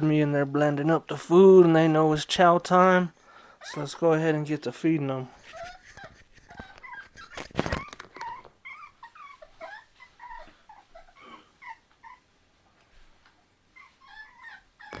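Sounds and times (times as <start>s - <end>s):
puppies whining and yipping: 3.5s - 4.0s, 5.4s - 12.3s, 13.7s - 15.0s.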